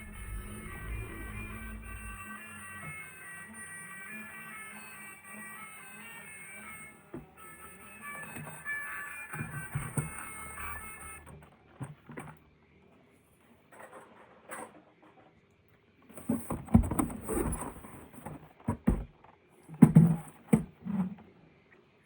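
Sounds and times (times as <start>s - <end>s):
background music: 0.0s - 11.2s.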